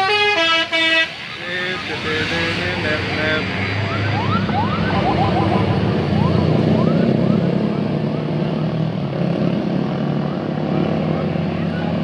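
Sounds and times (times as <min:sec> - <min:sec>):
bus engine running: 0:00.0 - 0:12.0
street noise: 0:00.0 - 0:12.0
faint rising chirps: 0:01.4 - 0:07.5.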